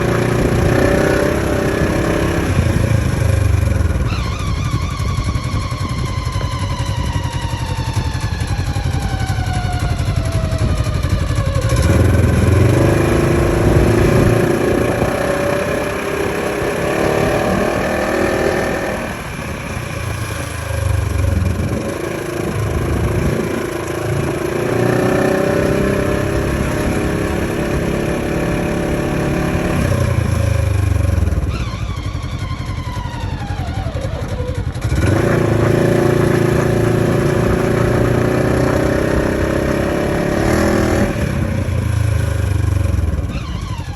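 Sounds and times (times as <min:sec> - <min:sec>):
gliding mechanical whine: 0:00.0 - 0:43.9
off-road vehicle engine running: 0:00.0 - 0:43.9.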